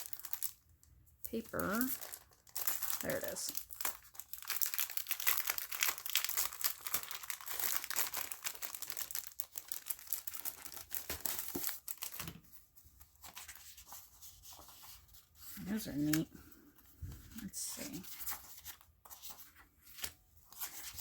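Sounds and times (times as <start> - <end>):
paper pack crinkling: 0.0 - 16.3.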